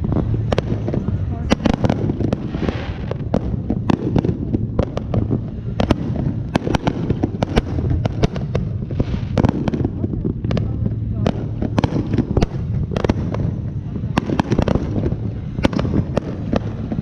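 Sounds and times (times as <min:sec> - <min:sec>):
fireworks bangs and pops: 0:00.0 - 0:17.0
steady low rumble: 0:00.0 - 0:17.0.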